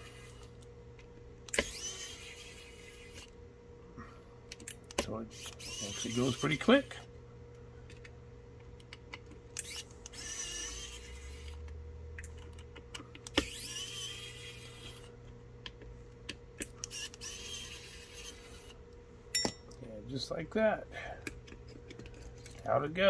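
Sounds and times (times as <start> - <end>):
electric screwdriver whirring: 1.5 - 3.4, 4.9 - 7.0, 9.6 - 11.8, 13.2 - 15.1, 16.6 - 18.8.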